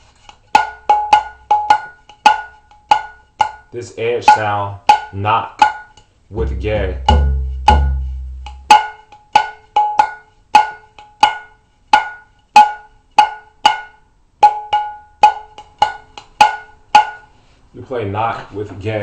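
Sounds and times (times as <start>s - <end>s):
hand drum strokes: 0.0s - 12.2s.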